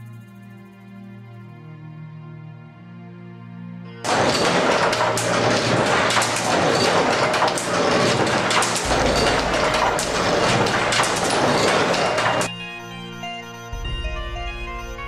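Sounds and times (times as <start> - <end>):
mechanical clatter: 4.0 - 12.5.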